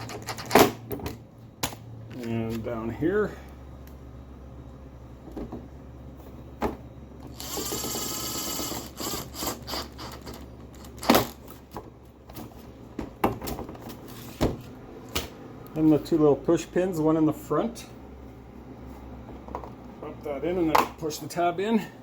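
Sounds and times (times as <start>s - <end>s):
cordless drill driving screw: 7.3s - 10.4s.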